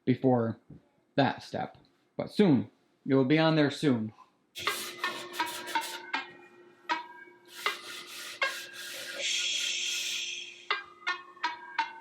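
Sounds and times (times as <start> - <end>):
scratchy rubbing: 4.6 - 6.1, 7.5 - 10.2.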